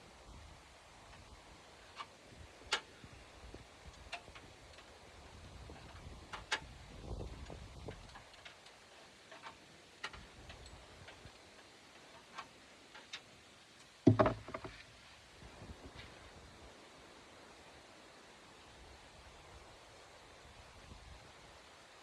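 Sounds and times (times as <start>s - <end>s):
clatter of knocks: 14.0s - 14.8s.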